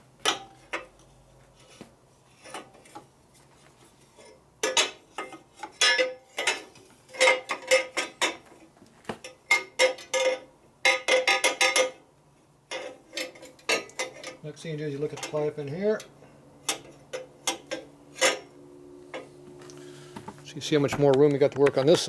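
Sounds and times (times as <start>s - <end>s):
metal exhaust parts clanking: 4.2s - 8.5s, 12.7s - 22.0s.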